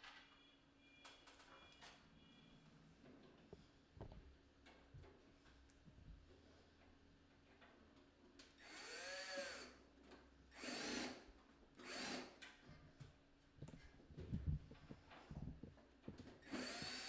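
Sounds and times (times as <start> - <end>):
faint power drill driving screws: 8.6 - 9.7, 10.5 - 12.6, 16.4 - 17.0.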